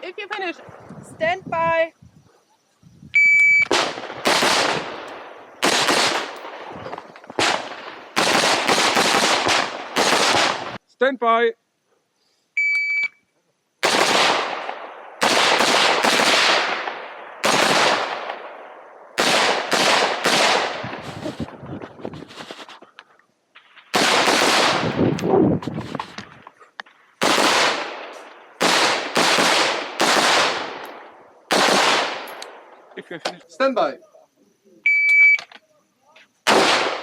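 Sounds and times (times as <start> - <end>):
rifle shots echoing: 3.7 - 10.8, 13.8 - 20.9, 23.6 - 25.1, 27.2 - 32.7, 36.5 - 37.0
shot timer beep: 12.6 - 13.2, 34.9 - 35.4.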